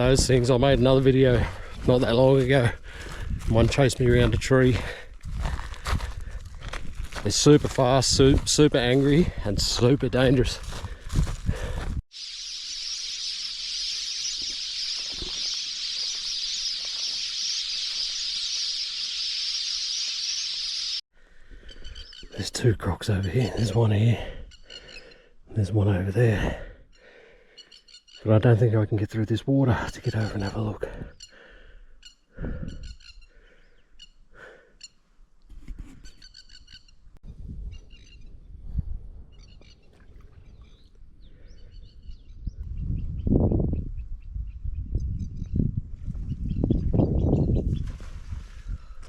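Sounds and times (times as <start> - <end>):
birds chirping: 11.6 - 21.0, 21.6 - 35.0, 36.0 - 37.1, 37.7 - 48.0
high-pitched insect chorus: 12.1 - 21.0.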